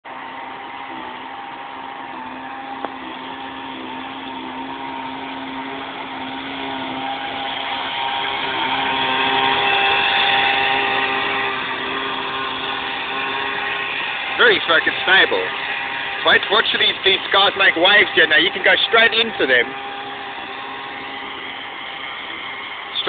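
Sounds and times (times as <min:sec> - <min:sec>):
two-stroke engine buzzing: 0:00.1 - 0:23.0.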